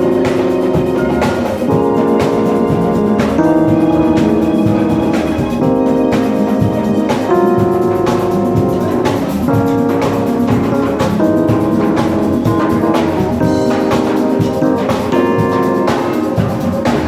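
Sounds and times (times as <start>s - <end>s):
drum kit beat: 0.0s - 17.0s
keyboard chords: 0.0s - 17.0s.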